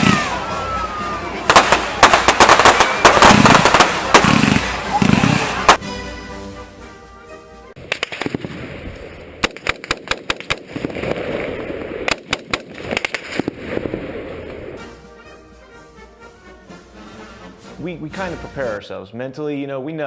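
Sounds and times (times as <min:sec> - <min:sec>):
background music: 0:00.0 - 0:10.3, 0:11.4 - 0:20.0
rapid sharp bangs: 0:01.5 - 0:05.8, 0:07.8 - 0:08.7, 0:09.4 - 0:13.9.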